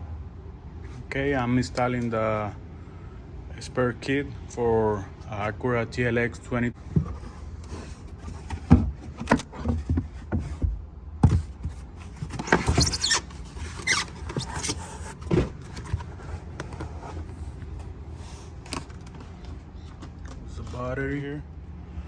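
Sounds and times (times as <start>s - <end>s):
plastic rubbing squeak: 11.3s - 18.8s.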